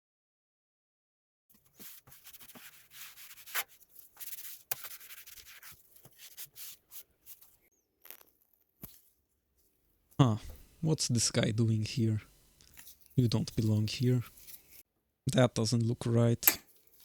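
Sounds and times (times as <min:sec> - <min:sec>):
rubbing and scraping: 0:01.6 - 0:08.3, 0:10.3 - 0:14.8.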